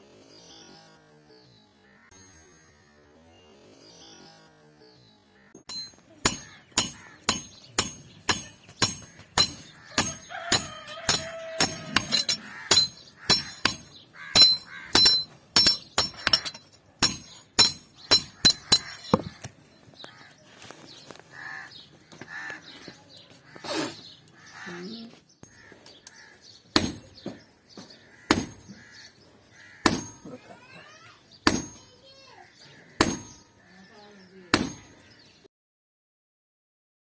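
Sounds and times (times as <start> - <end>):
hammer striking iron on anvil: 5.6 - 19.3, 26.8 - 27.4, 28.3 - 28.8, 29.9 - 30.4, 31.5 - 32.0, 33.0 - 33.6, 34.6 - 35.1.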